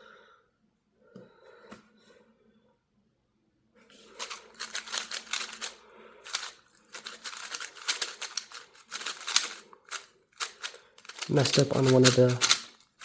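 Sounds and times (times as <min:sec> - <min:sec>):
speed cube plastic clicking: 0:04.1 - 0:13.0.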